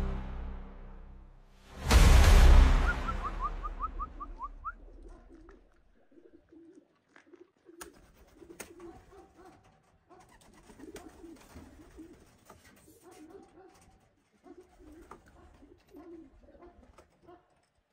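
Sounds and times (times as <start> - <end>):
pigeons cooing: 4.6 - 13.3, 14.4 - 17.4.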